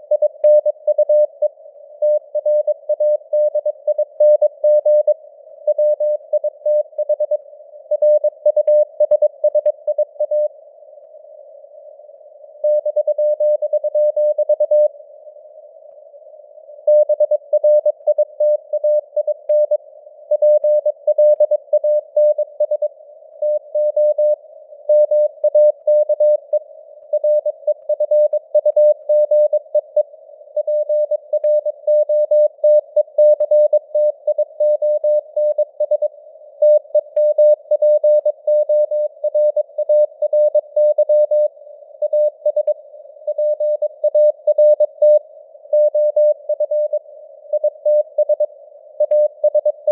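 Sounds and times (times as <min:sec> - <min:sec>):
faint radio hiss: 0:01.4 - 0:02.0, 0:05.2 - 0:06.3, 0:10.5 - 0:12.6, 0:14.9 - 0:16.9, 0:28.4 - 0:31.9, 0:41.4 - 0:45.7, 0:46.4 - 0:49.5.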